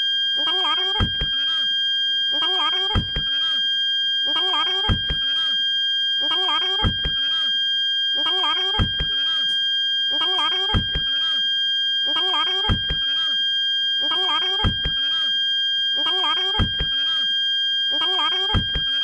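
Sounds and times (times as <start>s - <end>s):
parking sensor high beep: 0.0s - 1.6s, 2.3s - 3.4s, 4.3s - 5.5s, 6.2s - 7.4s, 8.2s - 11.2s, 12.1s - 13.3s, 14.0s - 15.2s, 16.0s - 19.0s.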